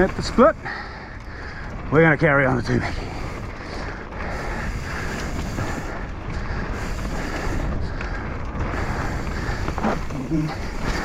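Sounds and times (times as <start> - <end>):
bike tyre noise on dirt trail: 0.0 - 11.0
wind on microphone: 2.8 - 11.0.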